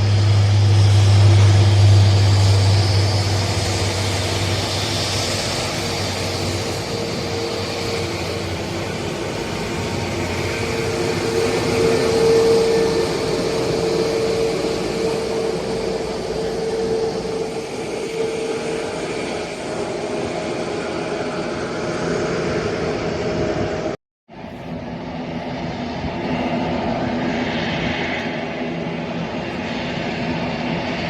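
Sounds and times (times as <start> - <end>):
airliner engines whining: 0.0 - 31.0.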